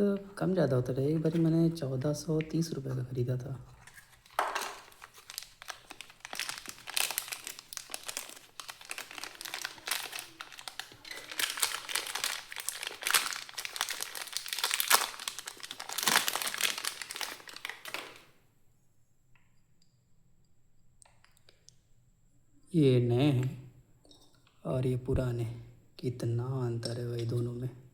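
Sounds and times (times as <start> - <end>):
packaging crinkling and rustling: 0.7 - 2.8, 3.7 - 18.3.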